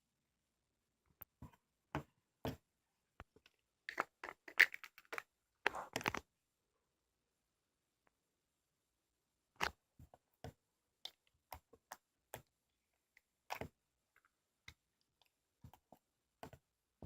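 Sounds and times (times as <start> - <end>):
faint irregular clicks and taps: 9.6 - 16.7.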